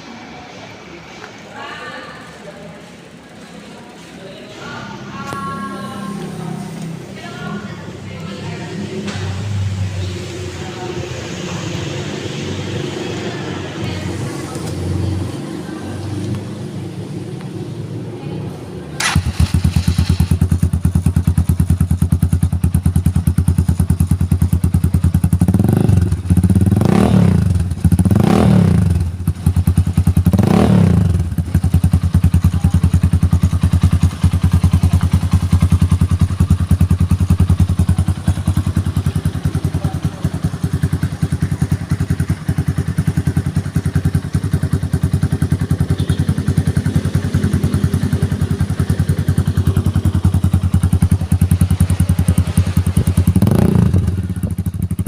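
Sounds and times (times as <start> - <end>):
motorcycle idling: 2.2 - 55.0
motorcycle throttle blips: 19.0 - 55.0.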